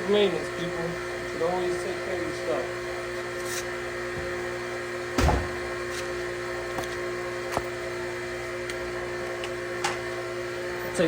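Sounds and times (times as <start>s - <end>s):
steady machine hum: 0.0s - 11.0s
dull thump: 5.2s - 5.7s.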